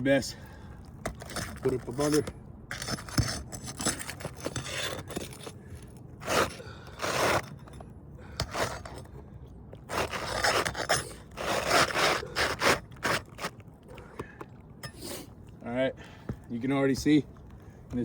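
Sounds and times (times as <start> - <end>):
shingle scraping against shingles: 1.0 - 15.4.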